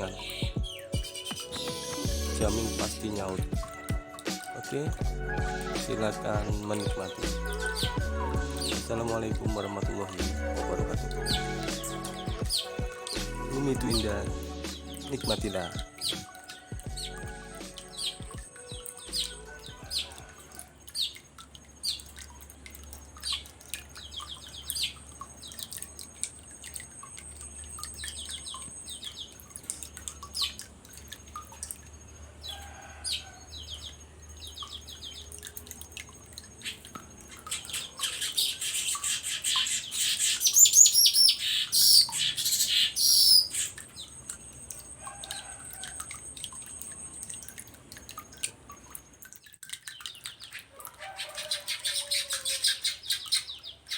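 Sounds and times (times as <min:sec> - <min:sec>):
bird buzzy chattering: 0:00.0 - 0:20.0, 0:36.5 - 0:44.0
bird chipping notes: 0:00.0 - 0:20.2, 0:36.4 - 0:49.2.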